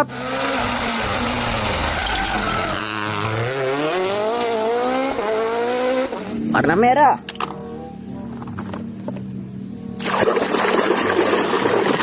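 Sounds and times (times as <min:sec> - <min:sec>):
race car engine revving: 0:00.0 - 0:06.7.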